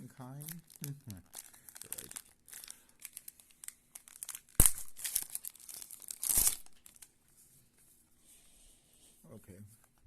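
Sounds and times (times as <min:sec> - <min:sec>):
wrapper tearing and crinkling: 0:00.3 - 0:07.1
sharp loud rip of wrapper: 0:04.1 - 0:07.0.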